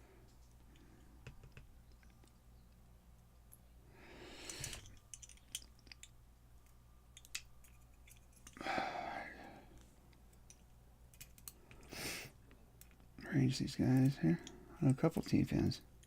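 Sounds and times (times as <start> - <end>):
lock pins and springs clicking: 4.5 - 8.6.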